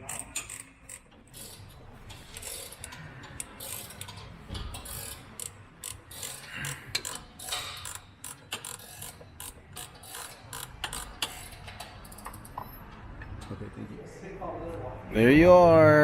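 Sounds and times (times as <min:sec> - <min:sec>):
ratchet wrench clicking: 0:00.0 - 0:12.7.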